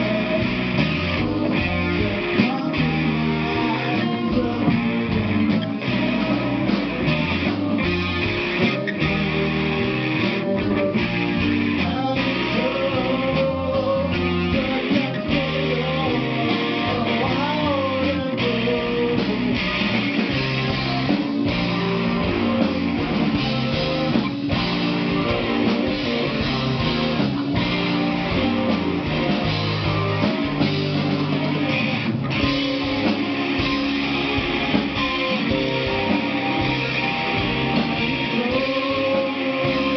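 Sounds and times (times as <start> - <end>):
live rock band: 0.0 - 39.9.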